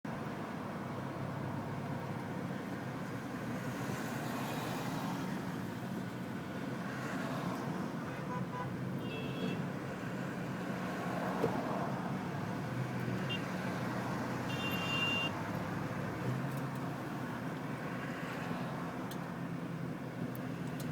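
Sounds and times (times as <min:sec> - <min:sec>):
car engine and road noise: 0:00.1 - 0:20.9
short car horn beeps: 0:14.5 - 0:15.4.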